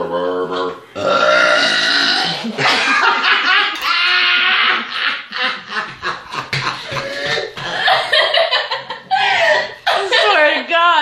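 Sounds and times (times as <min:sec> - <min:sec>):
people laughing: 0:02.4 - 0:10.5.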